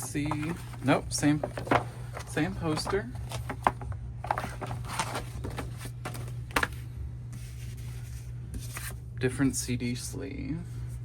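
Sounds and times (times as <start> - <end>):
paper and plastic rustling: 0.0 - 6.8
steady low hum: 0.0 - 11.0.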